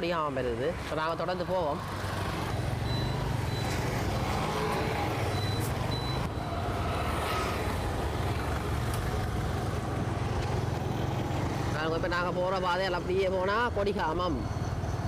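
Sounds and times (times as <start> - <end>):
traffic noise: 0.0 - 15.0
wind: 0.0 - 15.0
faint high-pitched beep: 2.8 - 3.8, 5.3 - 6.6.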